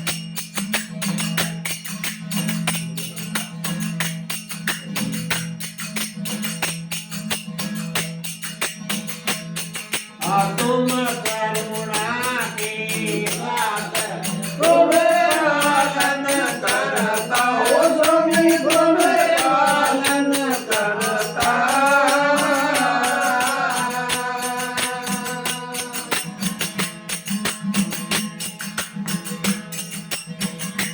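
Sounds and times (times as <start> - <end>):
jingling percussion: 0.0 - 30.9
person singing: 10.2 - 26.7.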